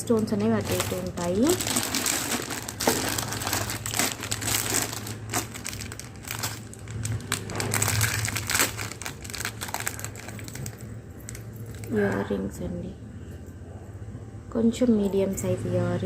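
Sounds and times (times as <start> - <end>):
plastic packaging crinkling: 0.0 - 12.1
low steady hum: 0.0 - 16.0.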